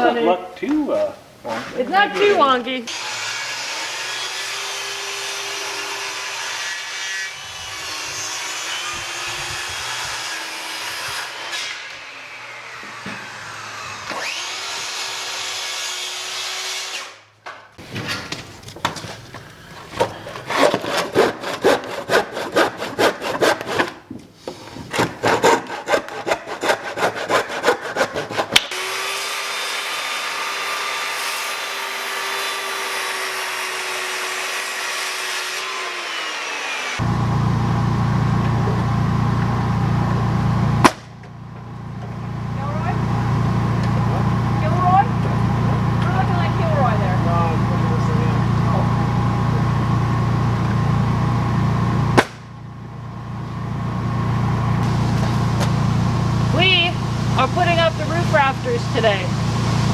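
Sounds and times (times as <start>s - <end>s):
hand saw strokes: 1.5s - 17.2s, 20.0s - 37.1s, 54.8s - 59.9s
power saw cutting wood: 1.5s - 17.3s, 20.0s - 52.5s, 54.3s - 59.9s.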